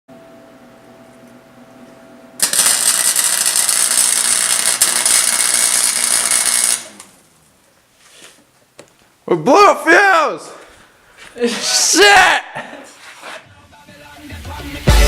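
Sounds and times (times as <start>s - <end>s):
electric tool running loudly: 2.4s - 7.1s.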